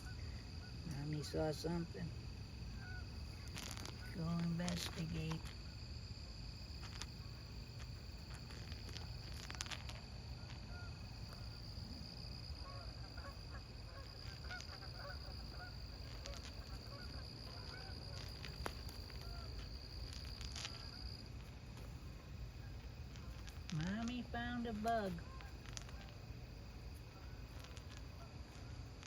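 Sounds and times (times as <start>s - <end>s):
insects trilling: 0.0s - 29.0s
short faint calls: 8.3s - 21.2s.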